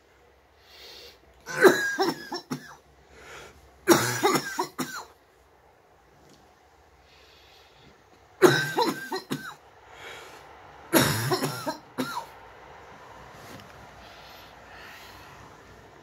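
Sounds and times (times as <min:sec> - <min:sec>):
man coughing harshly: 0:01.5 - 0:02.8, 0:03.9 - 0:05.1, 0:08.4 - 0:09.6, 0:10.9 - 0:12.3.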